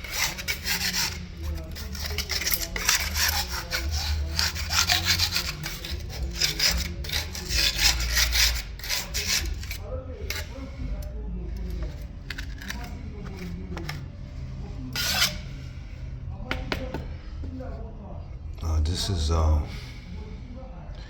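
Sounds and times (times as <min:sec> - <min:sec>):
hand tool rubbing on marble: 0:00.0 - 0:15.6.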